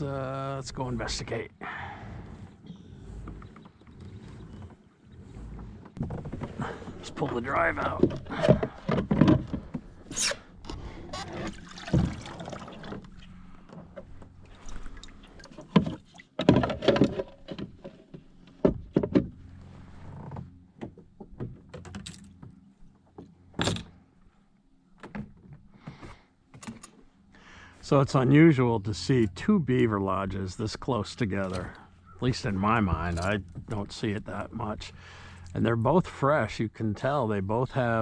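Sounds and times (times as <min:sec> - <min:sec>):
knocks and clunks of kayak drive: 0:01.7 - 0:24.1, 0:24.9 - 0:26.9, 0:31.6 - 0:35.4.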